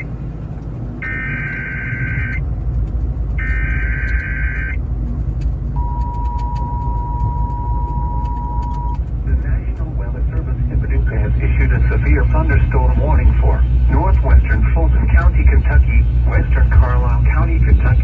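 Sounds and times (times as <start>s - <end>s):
steady attention tone: 0.0s - 0.2s, 1.0s - 2.4s, 3.4s - 4.8s, 5.8s - 9.7s, 10.5s - 18.0s
low rumble: 0.0s - 18.0s
buzzy digital data bursts: 1.0s - 2.4s, 3.4s - 4.8s.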